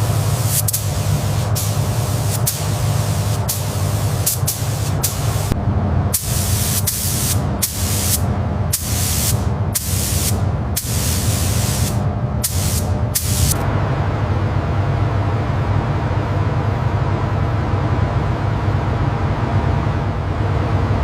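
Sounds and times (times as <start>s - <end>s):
pressurised spray hissing: 0.0s - 13.6s
low hum: 0.0s - 21.0s.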